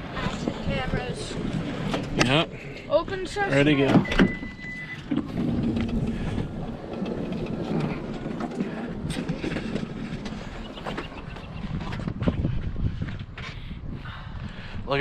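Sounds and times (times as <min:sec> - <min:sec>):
short steady beep: 0:04.0 - 0:05.0.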